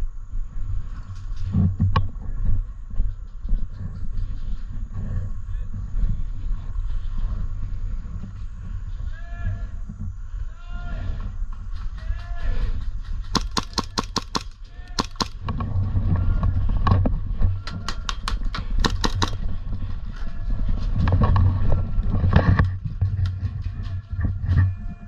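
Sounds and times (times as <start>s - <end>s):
airsoft guns firing: 13.3s - 15.6s, 18.2s - 19.6s.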